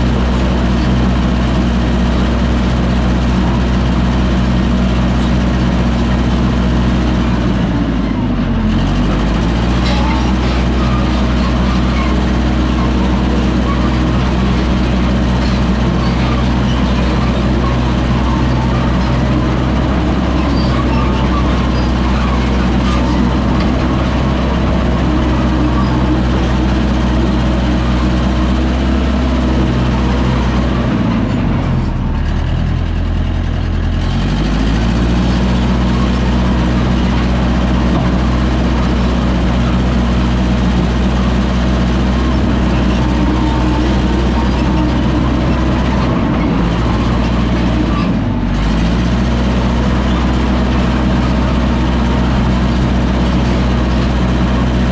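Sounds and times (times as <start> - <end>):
dozer engine running: 0.0 - 54.9.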